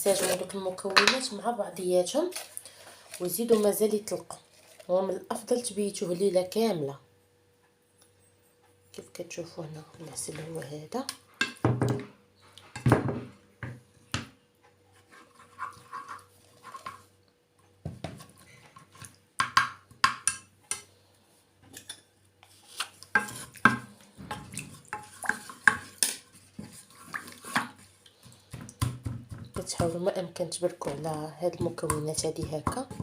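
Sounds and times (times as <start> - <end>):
spoon clinking against pot and dishes: 19.4 - 20.9.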